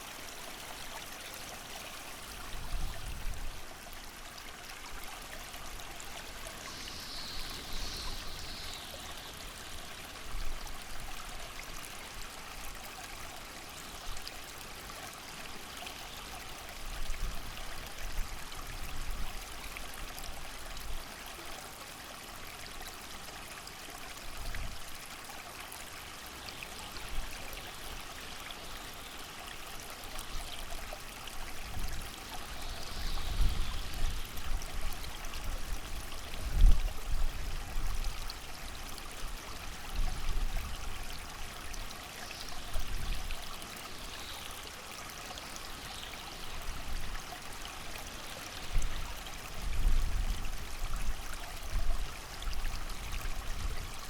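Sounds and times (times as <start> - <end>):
creek rushing: 0.0 - 18.6.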